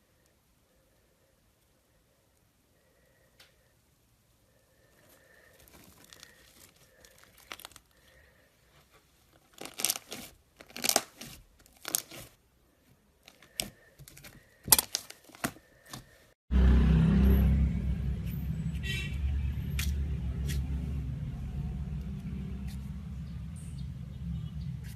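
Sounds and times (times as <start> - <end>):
slime crackling and snapping: 5.5 - 8.0, 9.4 - 12.3
loud low rumble: 16.5 - 24.9.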